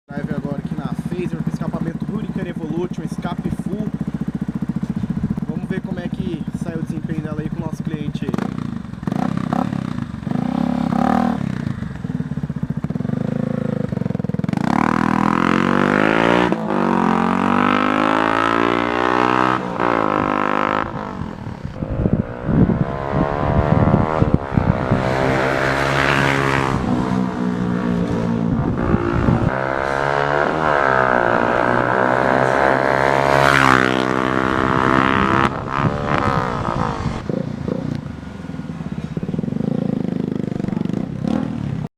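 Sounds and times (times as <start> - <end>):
motorcycle engine revving: 0.1 - 41.9.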